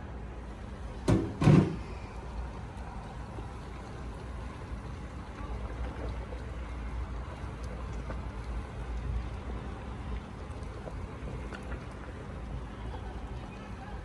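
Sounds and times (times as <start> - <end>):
cooking pot knocks: 1.0 - 1.8.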